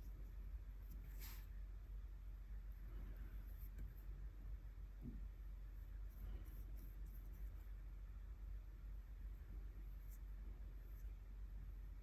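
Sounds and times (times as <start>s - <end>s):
soft stroke across paper: 0.0s - 1.6s, 5.8s - 7.8s, 9.7s - 11.2s
faint low hum: 0.0s - 12.0s.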